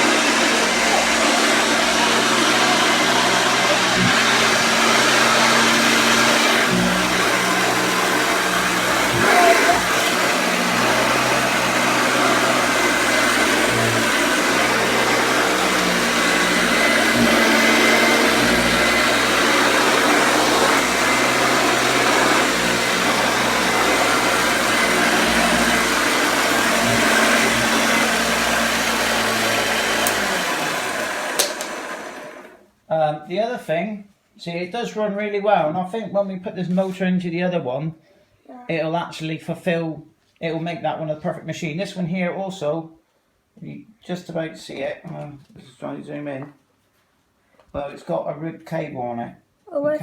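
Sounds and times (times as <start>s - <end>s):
vacuum cleaner running: 0.0s - 32.6s.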